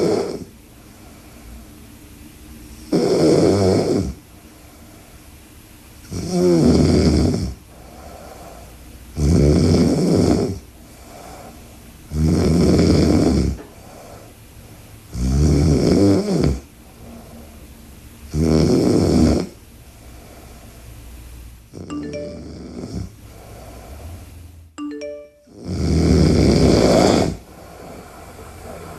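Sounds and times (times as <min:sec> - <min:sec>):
woman snoring loudly: 0:00.0 - 0:00.5, 0:02.9 - 0:04.2, 0:06.1 - 0:07.6, 0:09.2 - 0:10.6, 0:12.1 - 0:13.6, 0:15.1 - 0:16.6, 0:18.3 - 0:19.5, 0:25.6 - 0:28.9.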